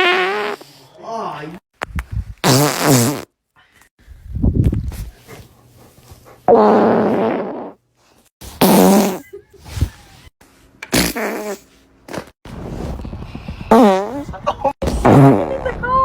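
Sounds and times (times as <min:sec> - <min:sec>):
loud pitched farts: 0:00.0 - 0:00.8, 0:02.4 - 0:03.3, 0:06.5 - 0:07.8, 0:08.6 - 0:09.2, 0:10.9 - 0:12.4, 0:13.7 - 0:16.0.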